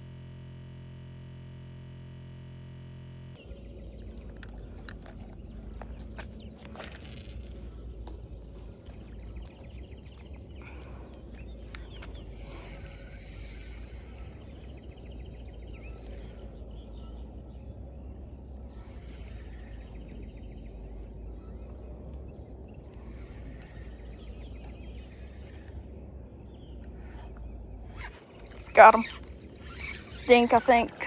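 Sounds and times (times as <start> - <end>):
low steady rumble: 0.0 - 31.0
high insect buzz: 5.2 - 31.0
fast trilling call: 27.9 - 31.0.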